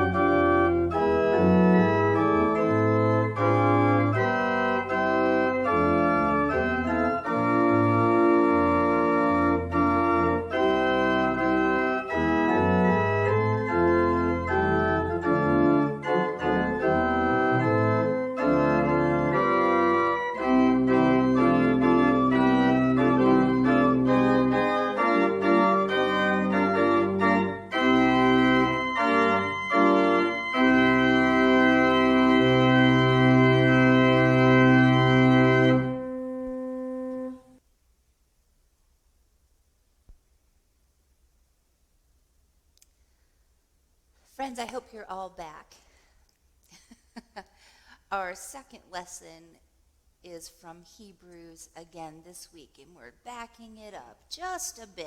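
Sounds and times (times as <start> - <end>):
organ playing sustained chords: 0.0 - 37.6.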